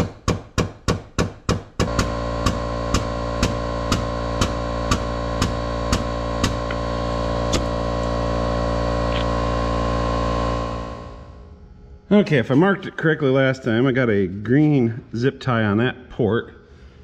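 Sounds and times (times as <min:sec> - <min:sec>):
sharp music beat: 0:01.8 - 0:11.3
sustained music chord: 0:01.9 - 0:12.9.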